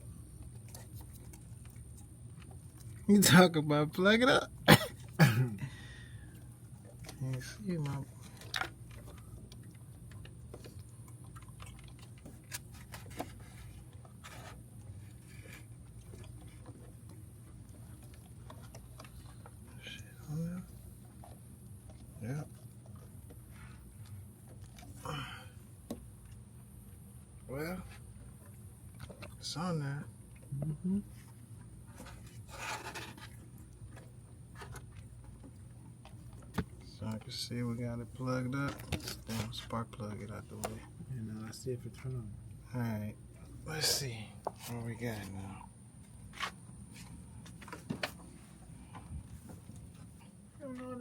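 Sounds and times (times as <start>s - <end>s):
steady low hum: 0.0s - 51.0s
faint clicks and scrapes: 0.4s - 3.0s, 6.3s - 20.1s, 31.1s - 37.7s, 38.5s - 39.8s
handling rubbing and scraping: 12.0s - 19.8s, 31.2s - 39.8s, 43.5s - 50.3s.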